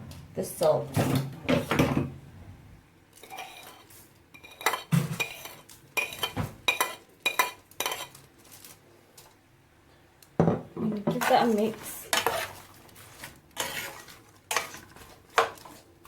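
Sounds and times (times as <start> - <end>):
metal spoon clinking on pan: 4.4 - 8.2.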